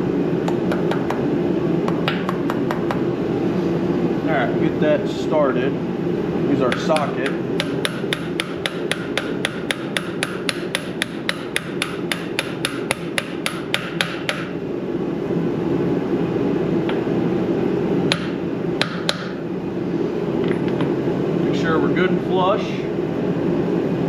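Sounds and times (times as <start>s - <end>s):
steady low hum: 0.0s - 24.0s
hammer striking metal: 6.7s - 14.5s.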